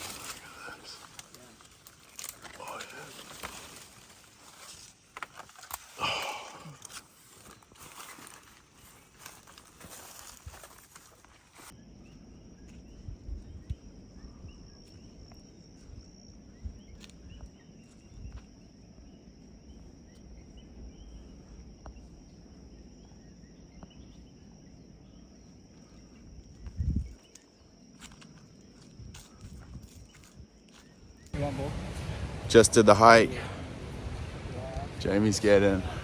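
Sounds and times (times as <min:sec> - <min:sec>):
insects chirring: 0:00.0 - 0:36.0
wind rumble on microphone: 0:12.6 - 0:18.6, 0:26.2 - 0:27.3, 0:28.9 - 0:36.0.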